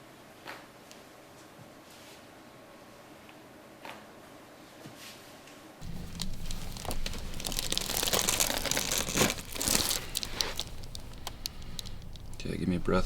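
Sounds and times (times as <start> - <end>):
dense crinkling and rustling: 5.8 - 13.0.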